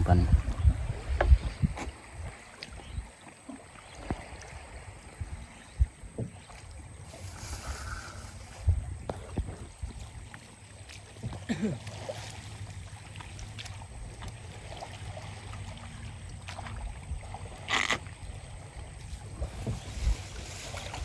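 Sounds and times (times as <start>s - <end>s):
steady low rumble: 0.0s - 2.2s
light knocks on wooden boat: 1.1s - 2.0s
burst of hiss: 7.3s - 8.5s
wavering creak: 17.7s - 18.1s.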